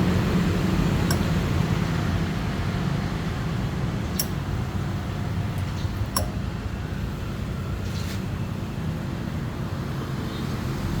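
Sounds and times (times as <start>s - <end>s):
light clink: 5.6s - 6.4s.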